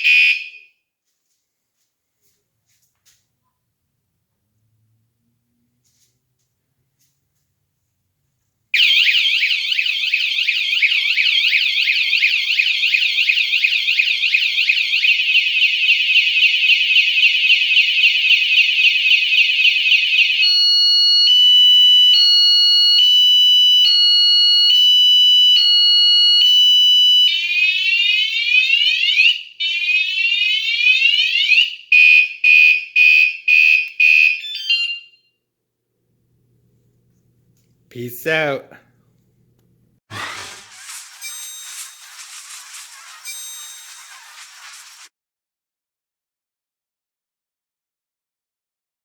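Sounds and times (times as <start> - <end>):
bike alarm siren: 0.0 - 0.8, 8.8 - 35.3.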